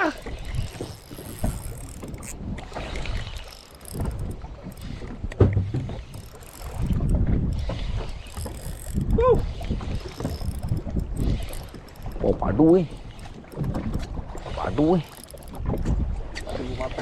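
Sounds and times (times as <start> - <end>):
person calling out: 0.0 - 0.2, 9.1 - 9.4
water moving around boat: 0.0 - 17.0
wind buffeting microphone: 0.0 - 17.0.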